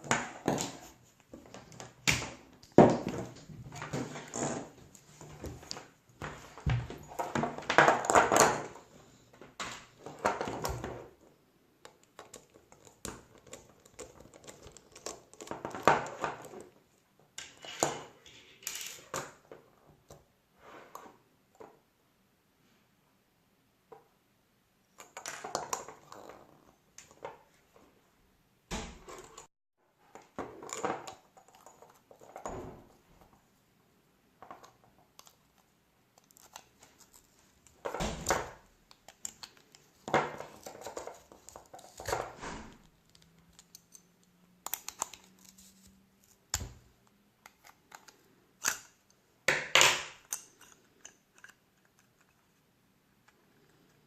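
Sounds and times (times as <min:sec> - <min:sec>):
tools scraping and clicking: 0:38.9 - 0:46.8, 0:50.1 - 0:52.5.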